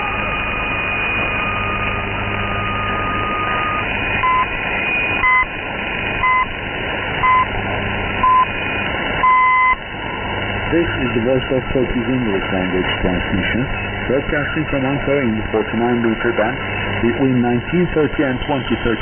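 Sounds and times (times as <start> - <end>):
time signal beeps: 0.0 - 5.5, 6.2 - 6.6, 7.2 - 7.5, 8.2 - 9.8
steady radio whistle: 0.0 - 6.6, 7.2 - 7.5, 8.2 - 19.0
radio static hiss: 0.0 - 19.0.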